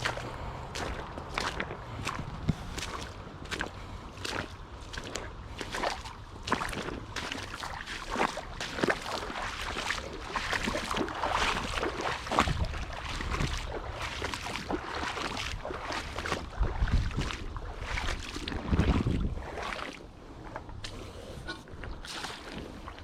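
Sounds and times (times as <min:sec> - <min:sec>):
water splashing in shallow creek: 0:00.0 - 0:23.0.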